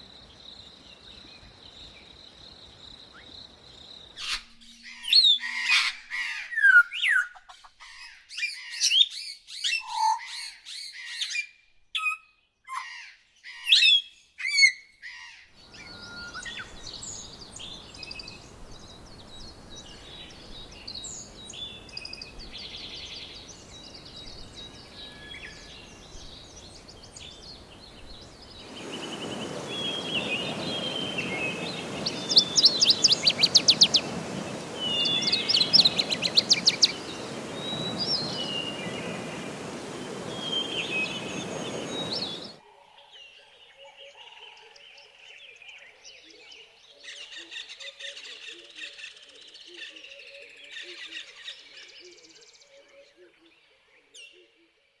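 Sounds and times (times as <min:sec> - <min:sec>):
soft bird calls: 0:12.8 - 0:42.6
faint hiss: 0:15.6 - 0:42.6
rapid bird trills: 0:23.2 - 0:42.6.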